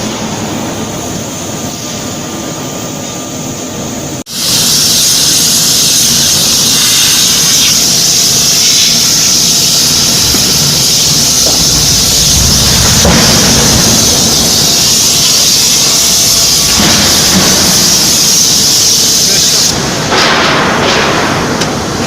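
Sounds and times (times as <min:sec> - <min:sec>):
industrial machinery noise: 0:00.0 - 0:22.0
high hiss: 0:04.2 - 0:20.2.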